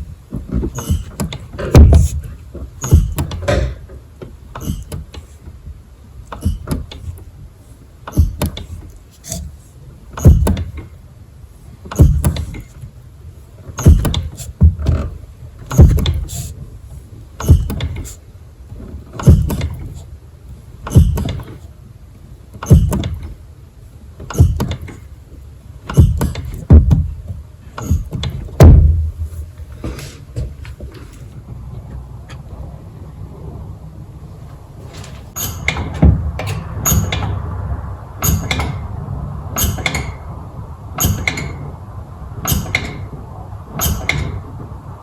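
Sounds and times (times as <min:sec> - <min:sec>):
clutch pedal squeaking and creaking: 0:00.0 - 0:05.6, 0:06.2 - 0:07.3, 0:08.0 - 0:11.0, 0:11.9 - 0:12.9, 0:13.7 - 0:16.6, 0:17.4 - 0:18.2, 0:18.8 - 0:20.2, 0:20.8 - 0:21.7, 0:22.6 - 0:23.4, 0:24.2 - 0:25.1, 0:25.8 - 0:29.6, 0:34.9 - 0:37.4
clutch pedal thump: 0:00.3 - 0:04.0, 0:04.6 - 0:05.3, 0:06.3 - 0:07.2, 0:08.1 - 0:09.5, 0:10.2 - 0:10.9, 0:11.9 - 0:12.7, 0:13.7 - 0:16.5, 0:17.4 - 0:18.2, 0:18.8 - 0:20.0, 0:20.8 - 0:21.6, 0:22.6 - 0:23.4, 0:24.2 - 0:25.0, 0:25.9 - 0:29.6, 0:35.4 - 0:37.3.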